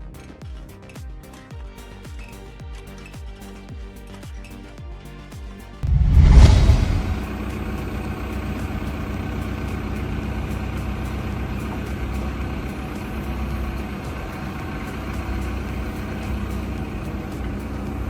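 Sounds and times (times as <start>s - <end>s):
engine running steadily: 5.8s - 18.0s.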